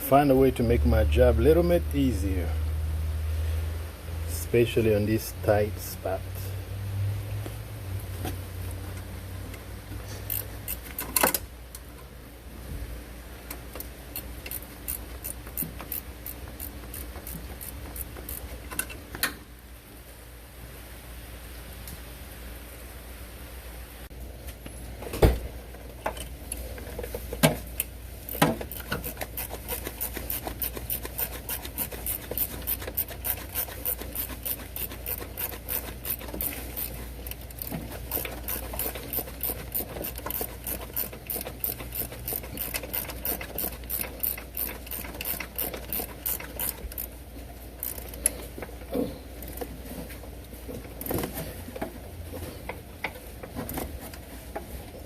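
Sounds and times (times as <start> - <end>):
hand ratchet clicking: 10.2 - 11.4, 13.8 - 19.0, 27.8 - 47.2, 47.8 - 48.5.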